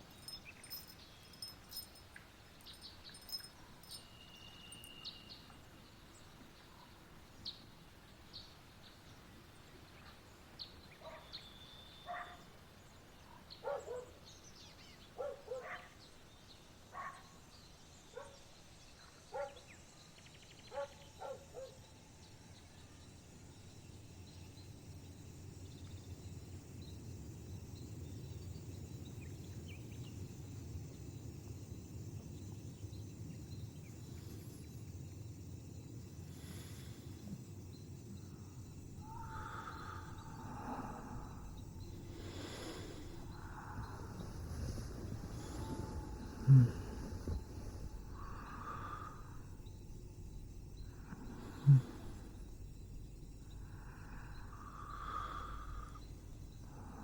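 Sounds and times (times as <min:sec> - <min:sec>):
faint ambient background: 0:00.0 - 0:57.0.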